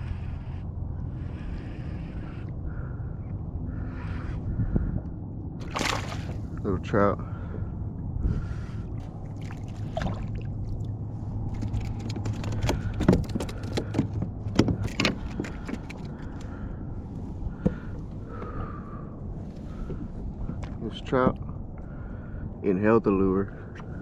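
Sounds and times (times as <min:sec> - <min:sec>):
low hum: 0:00.0 - 0:22.6
light water sounds: 0:05.6 - 0:06.7, 0:09.0 - 0:13.0
knocks and rattles against kayak: 0:11.5 - 0:16.6, 0:17.5 - 0:18.6.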